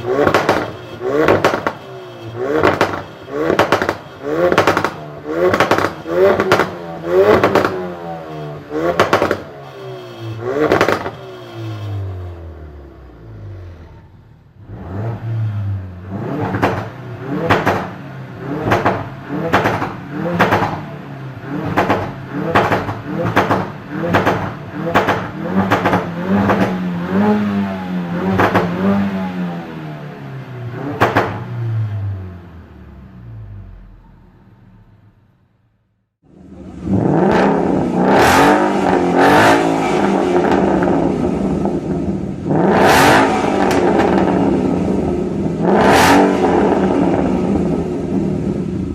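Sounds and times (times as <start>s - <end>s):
exhaust pops and crackles: 0.0s - 7.9s, 8.9s - 9.5s, 10.6s - 11.2s, 16.4s - 18.0s, 18.6s - 20.9s, 21.6s - 26.9s, 28.3s - 28.8s, 31.0s - 31.5s, 43.3s - 45.0s
car engine revving: 0.0s - 35.4s, 36.2s - 48.9s.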